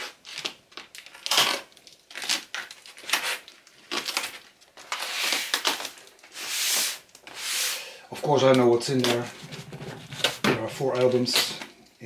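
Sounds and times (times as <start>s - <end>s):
packaging tearing and crinkling: 0.0s - 7.3s.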